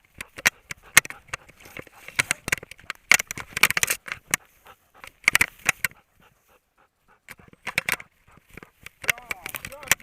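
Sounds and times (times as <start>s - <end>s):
dog panting: 0.1s - 2.8s, 4.1s - 9.0s.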